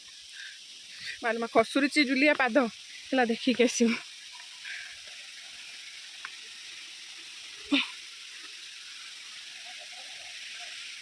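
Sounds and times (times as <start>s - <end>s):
waterfall hissing: 0.0s - 11.0s.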